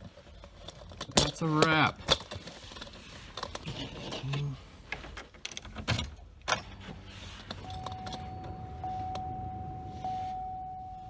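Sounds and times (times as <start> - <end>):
car keys jangling and clicking: 5.3 - 11.0
car warning chime dinging: 6.5 - 11.0.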